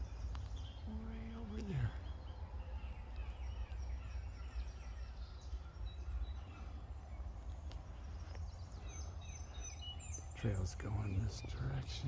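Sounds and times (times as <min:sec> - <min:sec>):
wild birds chirping: 0:00.0 - 0:12.0.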